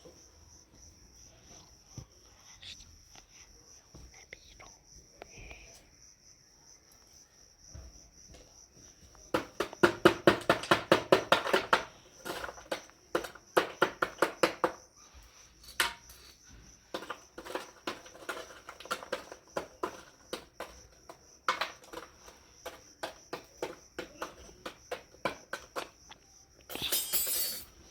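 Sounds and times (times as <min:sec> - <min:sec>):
crickets chirring: 0:00.0 - 0:27.9
sharp knocks and clicks: 0:09.1 - 0:14.9.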